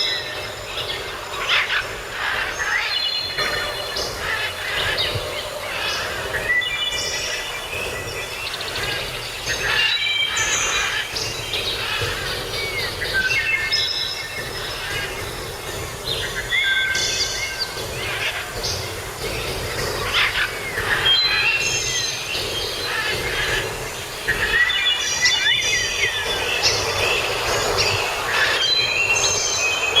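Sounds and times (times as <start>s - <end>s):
songbirds singing: 0.0s - 30.0s.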